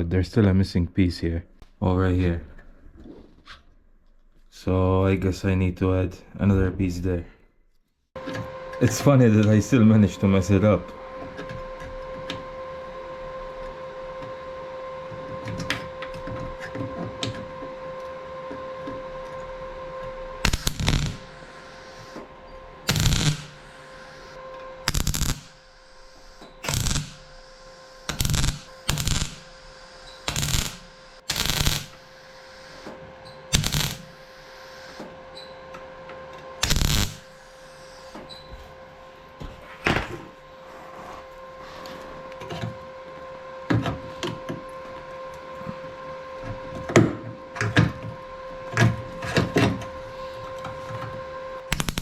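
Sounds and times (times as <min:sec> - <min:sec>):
steady hum: 0:08.2 - 0:52.0
welding crackle: 0:20.4 - 0:22.2, 0:22.8 - 0:35.0, 0:36.6 - 0:38.2, 0:51.7 - 0:52.0.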